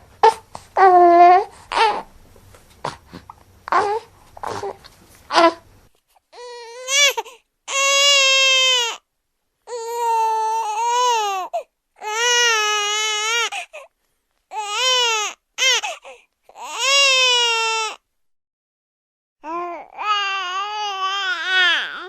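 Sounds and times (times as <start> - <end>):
infant crying: 0.2 - 2.1, 3.7 - 5.6, 6.3 - 9.0, 9.7 - 13.9, 14.5 - 18.0, 19.4 - 22.0.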